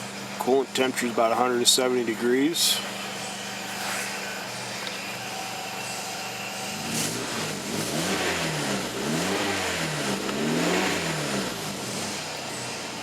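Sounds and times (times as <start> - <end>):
car engine idling and revving: 2.8 - 13.0.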